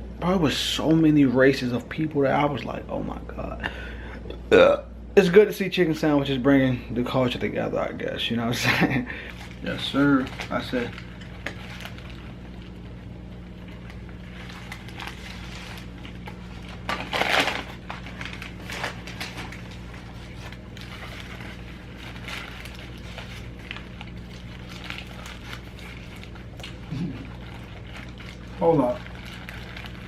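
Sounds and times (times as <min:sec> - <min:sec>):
steady electrical hum: 0:00.0 - 0:30.0
crunching and chewing food: 0:08.6 - 0:30.0.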